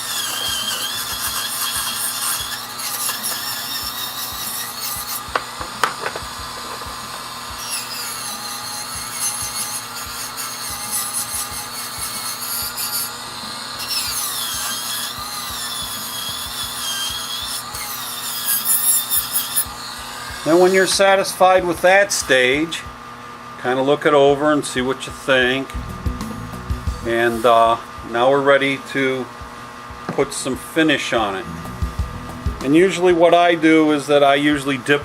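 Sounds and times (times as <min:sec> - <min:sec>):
abrasive rubbing on wood: 0:00.0 - 0:13.2
rotary tool whining: 0:00.0 - 0:21.1.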